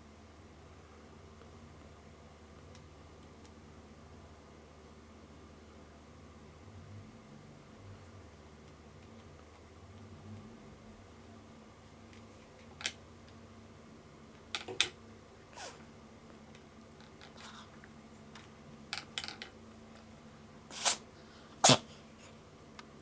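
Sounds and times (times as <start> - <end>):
cat sneezing: 15.6 - 15.9, 20.7 - 22.3.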